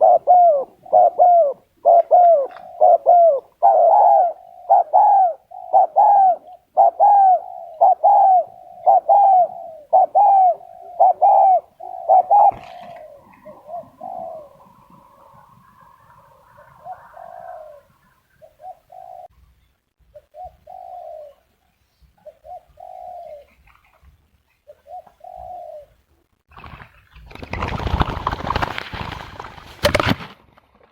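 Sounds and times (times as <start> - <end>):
dove cooing: 0.0 - 19.3, 20.1 - 23.8, 24.7 - 26.0.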